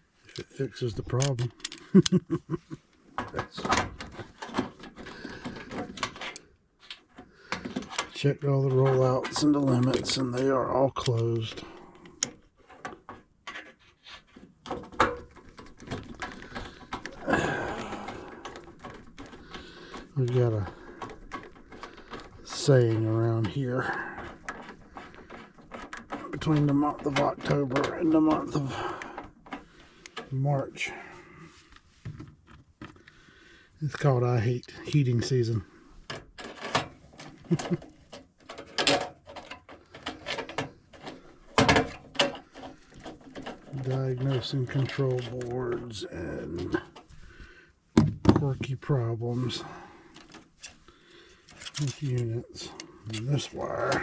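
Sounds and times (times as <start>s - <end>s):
clicks and knocks of tools: 0.3s - 2.2s, 3.0s - 30.3s, 36.1s - 45.8s, 50.1s - 54.0s.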